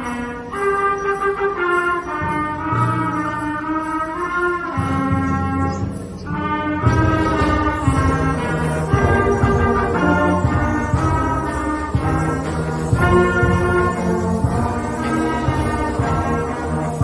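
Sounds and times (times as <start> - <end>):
brass band playing fanfare: 0.0 - 17.0.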